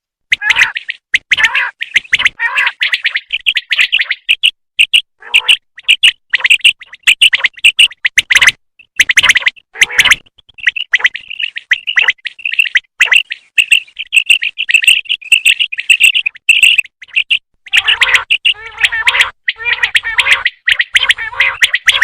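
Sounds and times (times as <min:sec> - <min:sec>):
quail calling: 0:00.3 - 0:10.2, 0:10.8 - 0:22.0.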